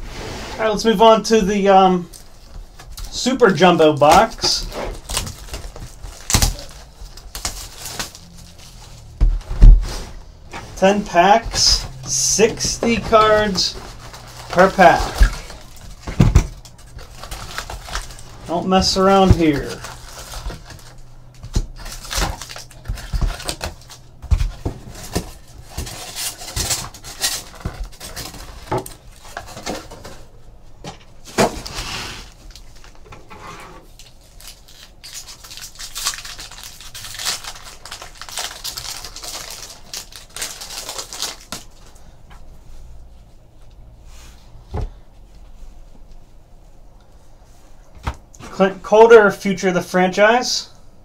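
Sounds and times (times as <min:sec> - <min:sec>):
foil wrappers tearing and crinkling: 0:02.1 - 0:09.2, 0:10.8 - 0:30.2, 0:33.9 - 0:42.0.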